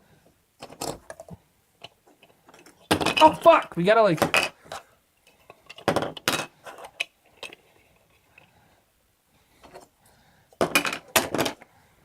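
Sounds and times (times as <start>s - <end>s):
game pieces clattering: 2.5s - 4.6s.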